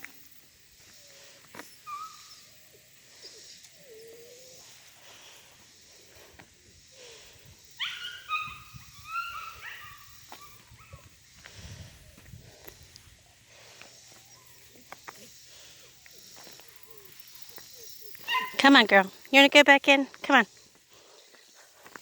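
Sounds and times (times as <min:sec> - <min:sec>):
puppy whimpering and whining: 0:01.8 - 0:02.5, 0:03.2 - 0:04.6, 0:07.8 - 0:11.1.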